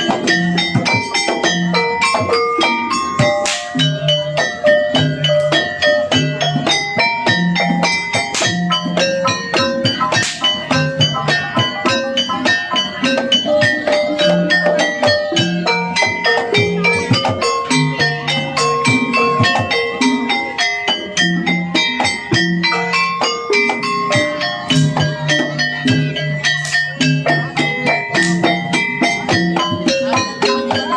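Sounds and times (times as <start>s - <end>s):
drums: 0.0s - 30.9s
struck metal percussion ringing: 0.0s - 30.9s.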